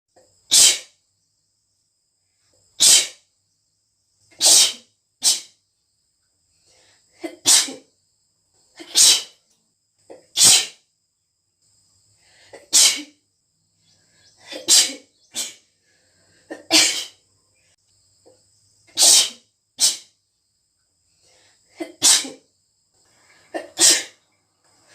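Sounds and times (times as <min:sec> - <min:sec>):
girl sneezing: 0:00.5 - 0:01.0, 0:02.8 - 0:03.2, 0:04.4 - 0:05.6, 0:07.2 - 0:07.9, 0:08.8 - 0:09.4, 0:10.4 - 0:10.8, 0:12.6 - 0:13.2, 0:14.4 - 0:15.6, 0:16.5 - 0:17.2, 0:18.9 - 0:20.1, 0:21.8 - 0:22.4, 0:23.6 - 0:24.2
intakes of breath: 0:06.5 - 0:07.1, 0:15.7 - 0:16.5, 0:23.0 - 0:23.6.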